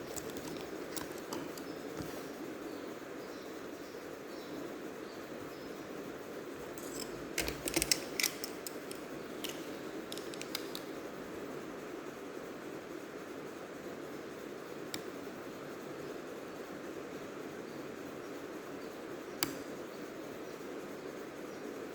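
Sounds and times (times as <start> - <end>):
laptop parts clicking and snapping: 0.0 - 2.3, 6.7 - 11.0
steady low hum: 0.0 - 21.9.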